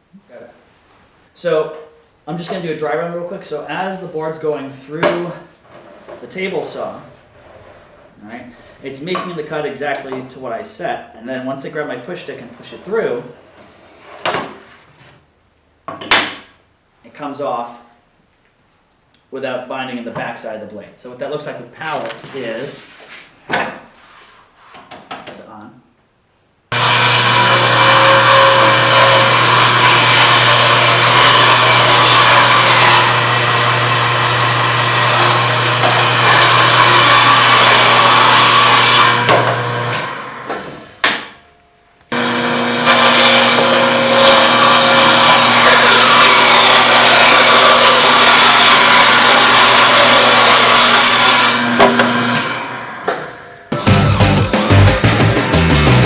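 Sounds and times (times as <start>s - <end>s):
table saw cutting wood: 26.7s - 41.4s, 42.1s - 56.0s.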